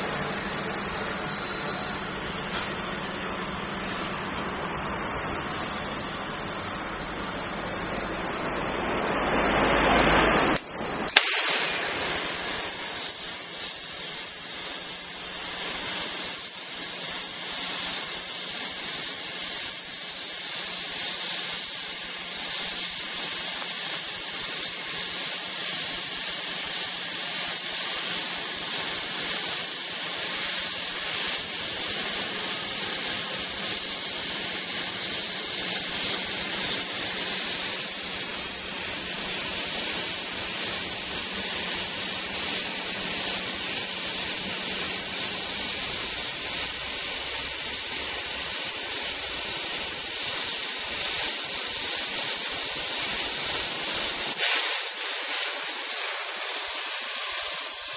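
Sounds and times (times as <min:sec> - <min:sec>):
machine loud rushing noise: 0:00.0 - 0:23.3
steady hiss: 0:00.0 - 0:57.9
sharp pop: 0:09.3 - 0:13.8, 0:54.3 - 0:56.6.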